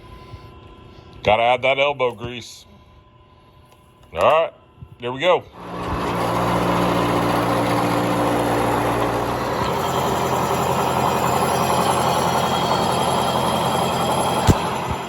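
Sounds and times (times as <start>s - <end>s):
motor hum: 5.6s - 15.0s
rush of abrasive blasting: 5.6s - 15.0s.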